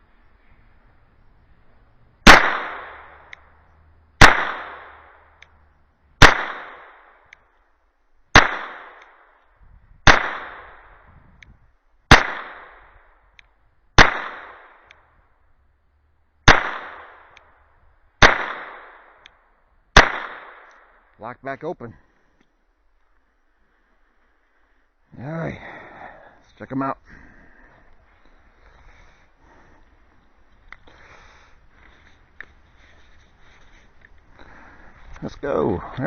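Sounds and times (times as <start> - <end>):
gunshots: 2.2 - 3.3, 4.2 - 5.2, 6.2 - 7.1, 8.3 - 9.1, 10.0 - 10.8, 12.1 - 12.8, 14.0 - 14.8, 16.4 - 17.3, 18.2 - 19.2, 20.0 - 20.8.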